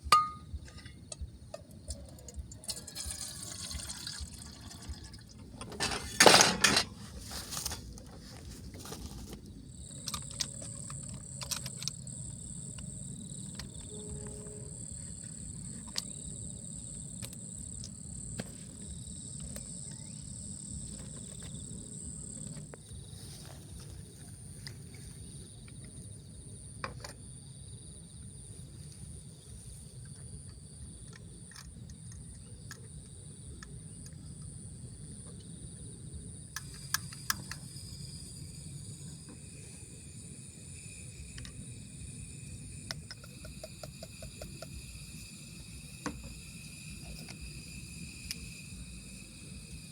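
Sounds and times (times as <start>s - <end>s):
insects trilling: 0.0s - 49.9s.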